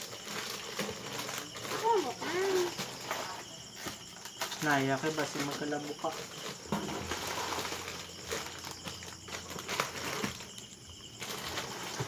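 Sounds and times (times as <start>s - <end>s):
packages knocking down: 0.0s - 12.0s
plastic packaging crinkling: 0.0s - 12.0s.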